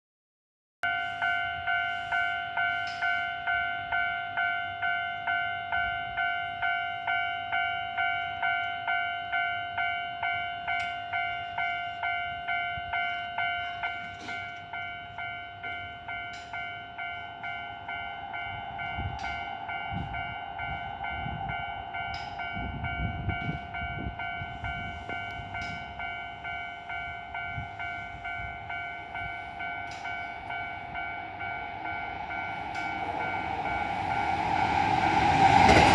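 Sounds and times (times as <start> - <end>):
level crossing bell clanging: 0.8 - 35.9
train wheels rumbling and knocking: 10.3 - 35.9.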